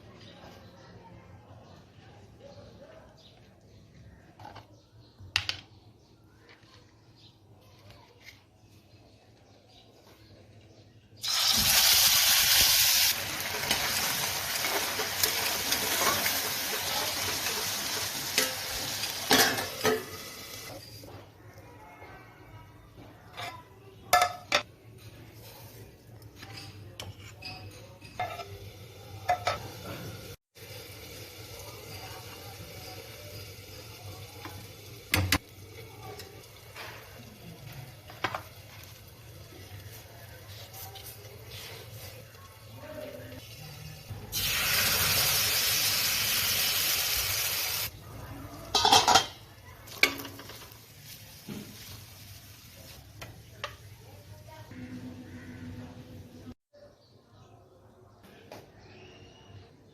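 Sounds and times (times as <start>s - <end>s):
loud sizzling in a hot pan: 11.2s - 21.0s, 28.2s - 48.0s, 48.7s - 53.9s
metal utensil clinking on cookware: 13.3s - 21.1s, 23.3s - 25.2s, 26.2s - 30.3s, 48.6s - 50.8s
utensil clattering against pan: 48.7s - 49.4s.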